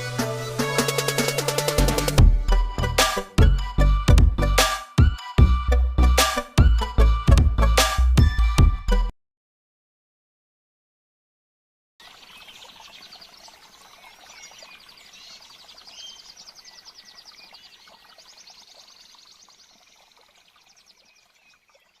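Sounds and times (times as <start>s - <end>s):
bird chirps: 12.0s - 22.0s.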